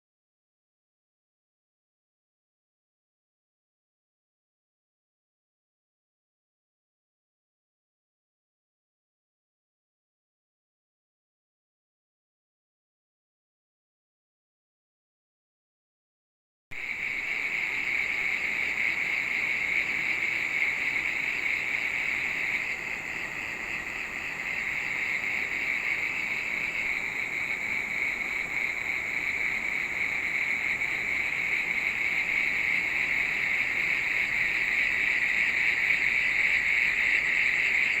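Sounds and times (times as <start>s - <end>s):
high-pitched insect chorus: 16.8s - 38.0s.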